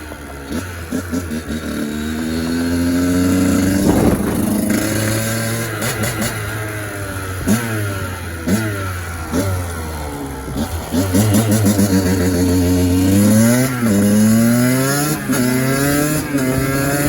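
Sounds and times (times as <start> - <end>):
two-stroke engine revving: 0.0 - 17.0.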